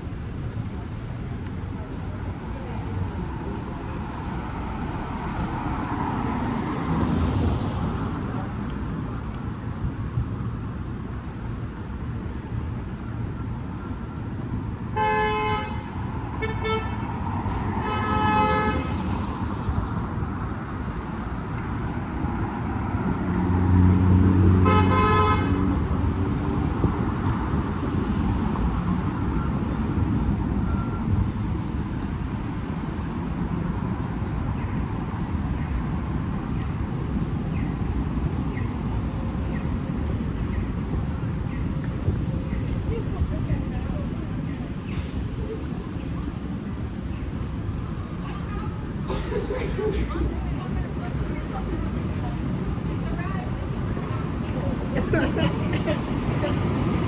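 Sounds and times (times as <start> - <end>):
city street traffic: 0.0 - 57.0
car horn honking: 15.0 - 17.1, 17.8 - 19.0, 24.6 - 25.7
heavy vehicle rumbling past: 22.0 - 32.9.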